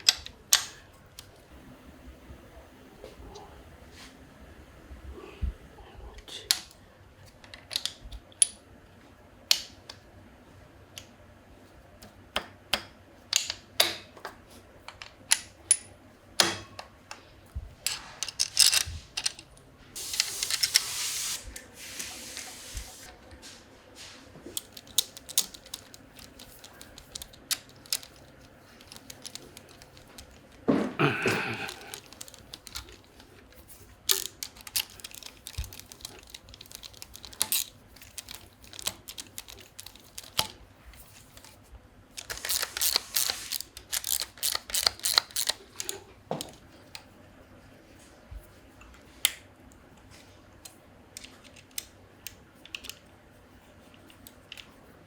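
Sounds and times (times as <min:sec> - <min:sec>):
hiss: 0:20.0 - 0:23.1.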